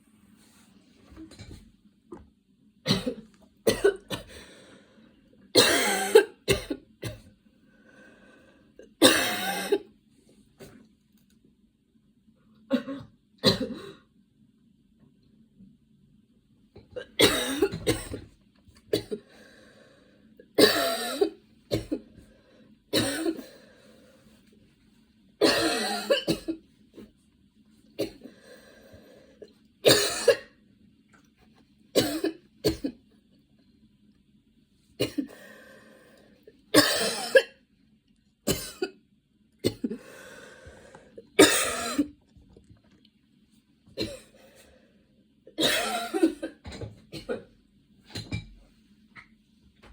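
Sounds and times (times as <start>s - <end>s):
woman coughing: 2.9s - 4.3s, 5.6s - 7.3s, 9.0s - 9.9s, 12.7s - 14.0s, 17.0s - 18.2s, 18.9s - 19.2s, 20.6s - 22.1s, 22.9s - 23.5s, 25.4s - 26.6s, 29.8s - 30.6s, 32.0s - 33.0s, 35.0s - 35.3s, 36.7s - 37.6s, 38.5s - 39.0s, 39.6s - 40.0s, 41.4s - 42.1s, 44.0s - 44.4s, 45.6s - 47.5s.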